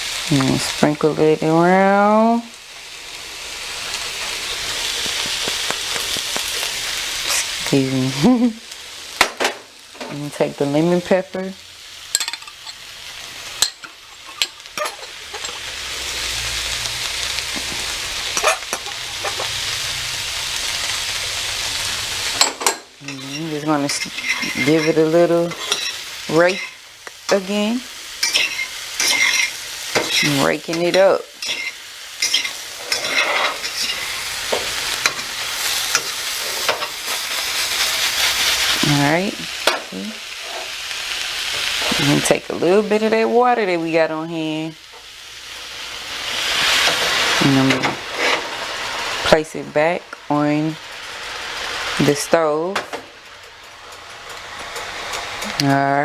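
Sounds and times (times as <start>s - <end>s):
vegetables sizzling in a hot pan: 0.0s - 56.0s
utensils clicking against a pan: 12.1s - 12.9s, 13.5s - 15.7s, 17.4s - 19.6s, 22.3s - 27.6s, 28.2s - 37.9s, 52.8s - 55.8s.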